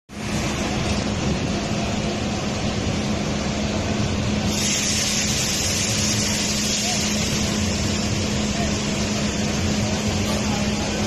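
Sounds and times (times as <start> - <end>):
bus engine humming: 0.1 - 11.0
steady high hiss: 0.1 - 11.0.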